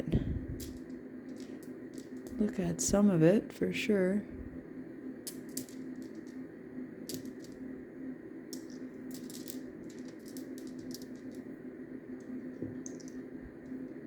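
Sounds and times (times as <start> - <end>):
steady low hum: 0.0 - 14.0
stones clicking together: 0.6 - 2.5, 5.2 - 6.4, 8.5 - 11.5, 12.8 - 13.8.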